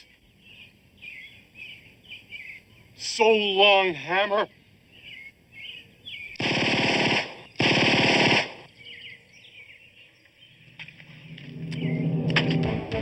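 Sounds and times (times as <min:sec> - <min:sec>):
automatic gunfire: 0:06.4 - 0:08.7.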